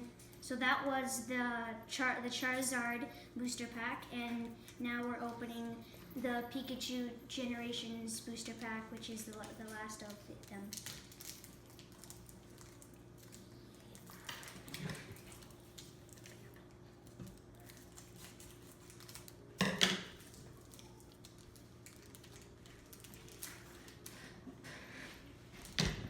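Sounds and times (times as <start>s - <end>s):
foil pack rustling: 9.0s - 16.5s, 17.3s - 19.5s, 20.1s - 24.4s.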